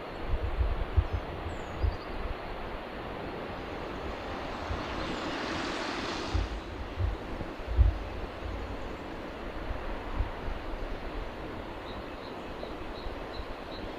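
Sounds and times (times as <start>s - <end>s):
wind buffeting microphone: 0.0s - 13.9s.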